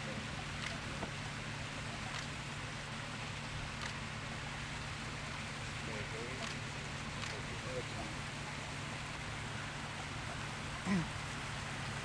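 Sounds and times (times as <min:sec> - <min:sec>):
faint ticks: 0:02.1 - 0:02.3, 0:03.8 - 0:04.0.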